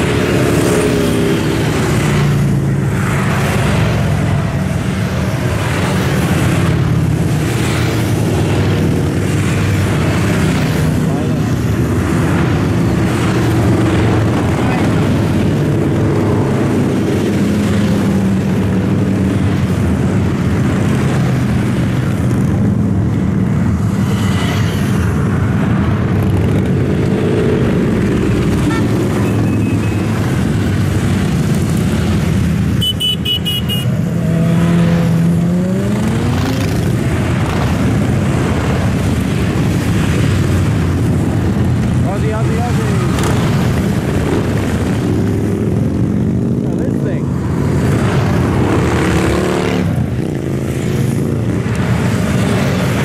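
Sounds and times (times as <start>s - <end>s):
traffic engines droning: 0.0s - 53.0s
engine revving: 34.1s - 39.7s, 48.0s - 53.0s.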